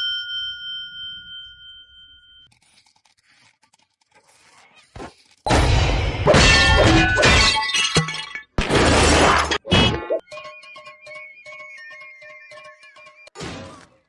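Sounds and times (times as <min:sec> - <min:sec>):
glass smashing: 0:06.2 - 0:10.1.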